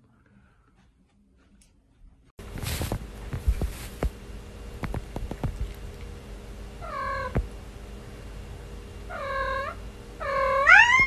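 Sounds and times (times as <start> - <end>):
cat meowing: 9.2 - 11.0.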